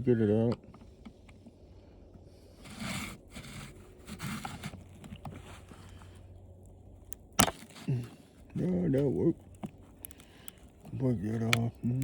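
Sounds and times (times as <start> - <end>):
hand tools scraping plastic: 2.6 - 6.1
plastic snapping: 7.0 - 12.0.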